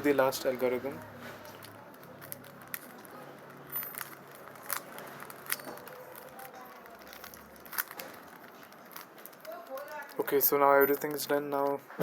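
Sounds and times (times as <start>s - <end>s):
plastic puzzle cube clicking: 1.6s - 10.4s.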